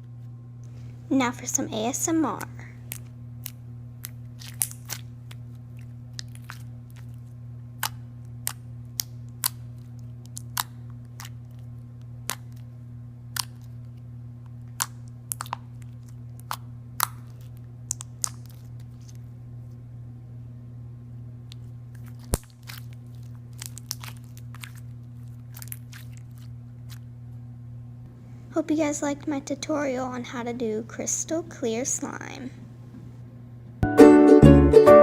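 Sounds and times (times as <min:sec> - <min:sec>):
steady low hum: 0:00.0 - 0:33.8
slime clicking and popping: 0:02.9 - 0:05.4, 0:07.8 - 0:09.6, 0:13.3 - 0:13.7, 0:14.8 - 0:18.7, 0:23.6 - 0:24.8.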